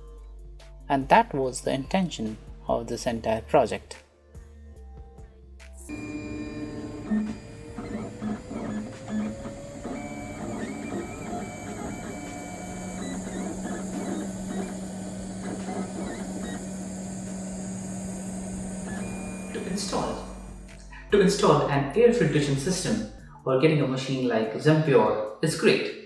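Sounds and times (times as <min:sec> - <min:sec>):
stepper motors whining: 0:05.8 - 0:21.1
constant hum: 0:05.8 - 0:21.3.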